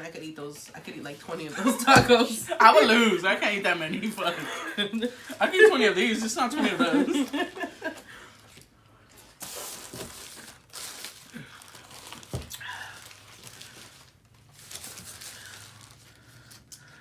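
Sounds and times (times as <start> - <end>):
paper wrappers crinkling: 8.3 - 17.0.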